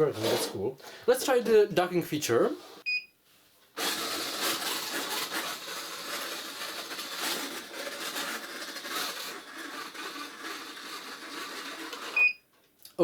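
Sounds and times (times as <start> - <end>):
robot vacuum whirring: 3.8 - 12.3.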